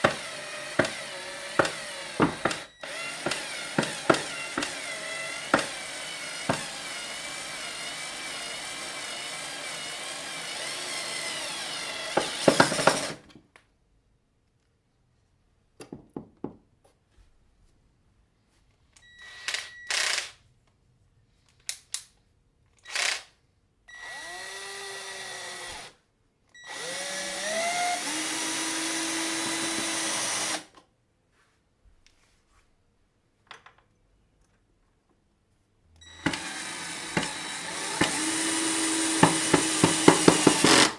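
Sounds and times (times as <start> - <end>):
cordless screwdriver motor: 0.0 - 13.1, 36.0 - 40.9.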